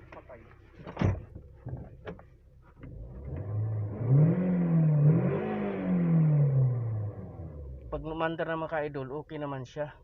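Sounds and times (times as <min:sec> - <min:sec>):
car engine revving: 0:02.8 - 0:08.2.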